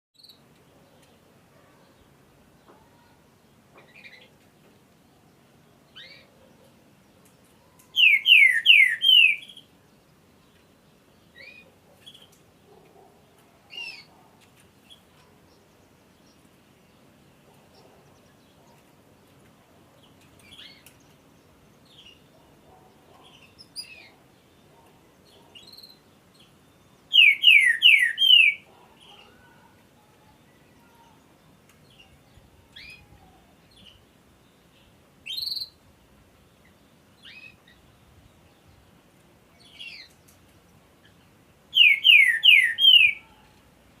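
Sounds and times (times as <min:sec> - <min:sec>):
bird singing descending phrases: 0:07.9 - 0:09.7, 0:26.6 - 0:29.7, 0:41.7 - 0:43.3
soft bird call notes: 0:27.2 - 0:31.2, 0:41.8 - 0:43.5.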